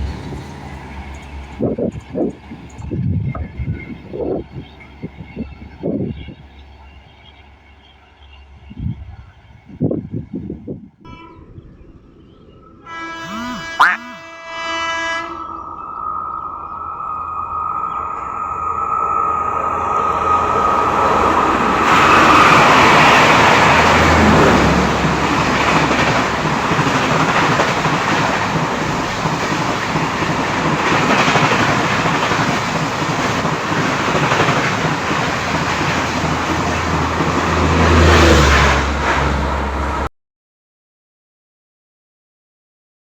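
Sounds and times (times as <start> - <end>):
train wheels on rails: 0.0 - 10.5, 16.3 - 40.1.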